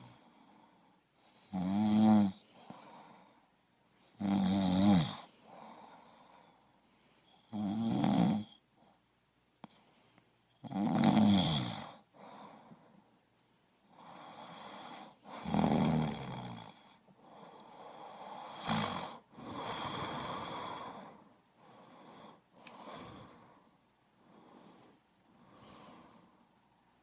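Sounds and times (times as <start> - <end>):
quiet breathing: 0.0 - 7.7, 8.4 - 10.6, 11.7 - 27.0
person snoring: 1.4 - 3.2, 4.2 - 6.0, 7.4 - 8.6, 10.6 - 12.0, 13.9 - 23.5.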